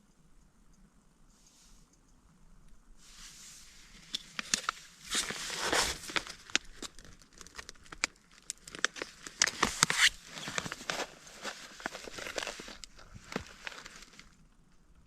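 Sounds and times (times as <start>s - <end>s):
plastic rustling and crackling: 3.9s - 14.6s.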